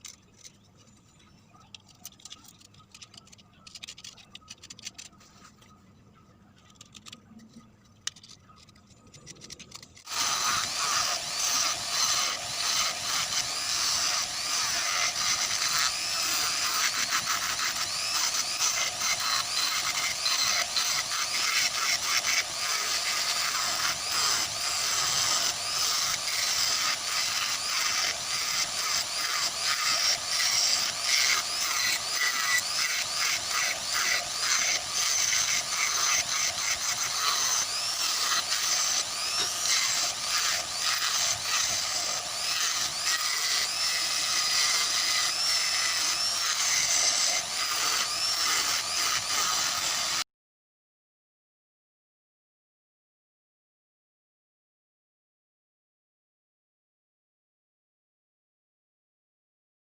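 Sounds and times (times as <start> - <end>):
tool rasping wood: 9.3 - 50.2.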